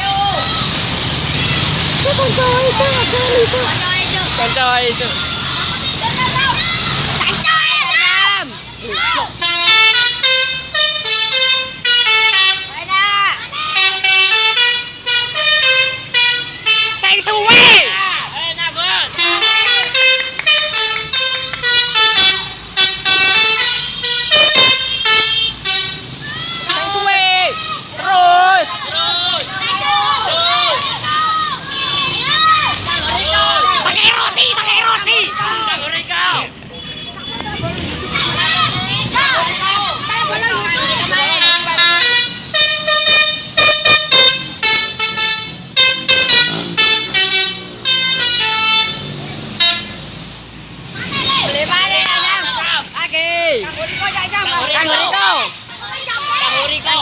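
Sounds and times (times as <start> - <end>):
musical horn melody: 9.4 - 12.8, 13.8 - 17.2, 19.2 - 27.0, 41.2 - 50.0
multi-tone air horn jingle: 41.3 - 50.0.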